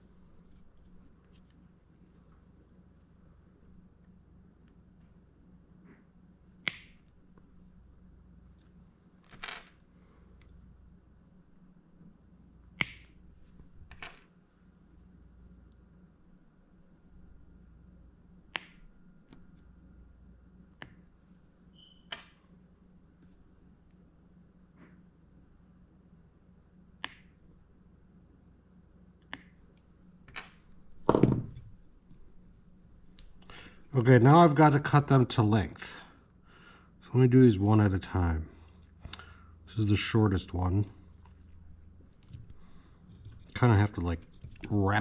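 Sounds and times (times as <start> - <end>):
object knocking on workbench: 31.1 - 31.6.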